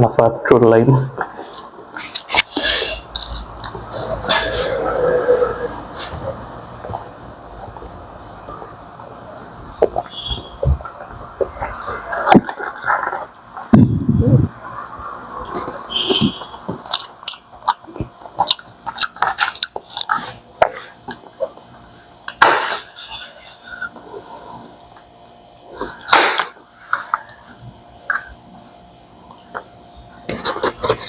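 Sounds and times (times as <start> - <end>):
person chewing: 1.2 - 8.8, 9.8 - 14.5, 15.3 - 27.4.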